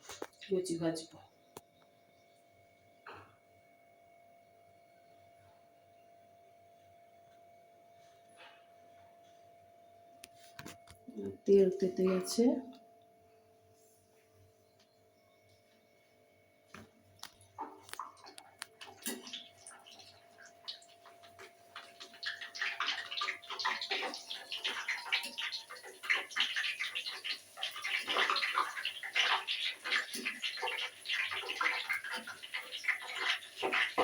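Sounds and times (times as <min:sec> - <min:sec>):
dough sizzling in hot oil: 0:17.6 - 0:34.0.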